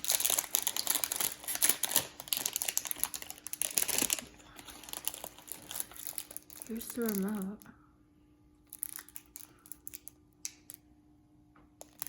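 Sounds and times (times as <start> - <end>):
plastic packaging crinkling: 0.0 - 7.7, 8.6 - 10.7.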